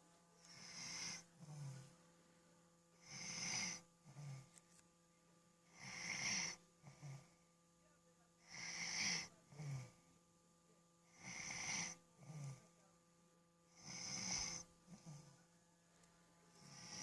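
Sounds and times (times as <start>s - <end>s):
person snoring: 0.4s - 1.9s, 3.0s - 4.5s, 5.7s - 7.3s, 8.4s - 10.0s, 11.1s - 12.6s, 13.7s - 15.4s, 16.6s - 17.0s.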